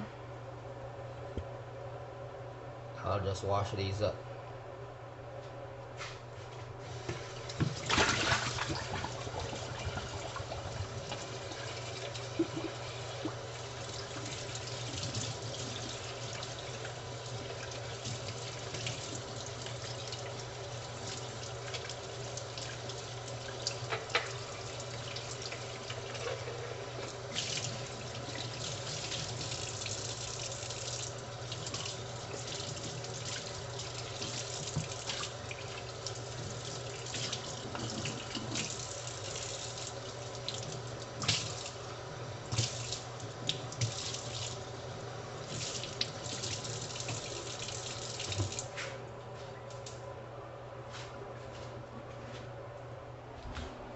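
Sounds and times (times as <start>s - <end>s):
tap running into sink: 48.2s - 48.7s.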